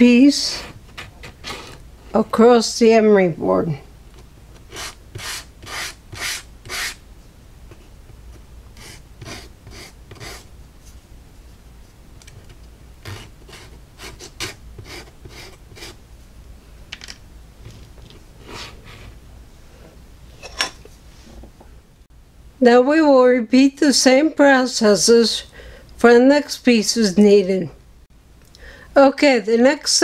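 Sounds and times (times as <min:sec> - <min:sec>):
wood sanding on emery board: 0:04.7 - 0:07.0, 0:08.8 - 0:10.5.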